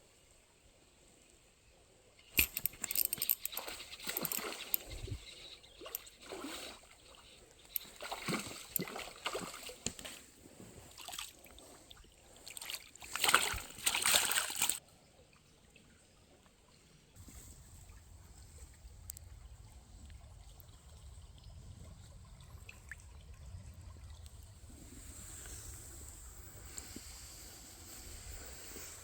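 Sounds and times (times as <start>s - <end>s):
water splashing: 5.8s - 10.1s, 12.4s - 14.8s.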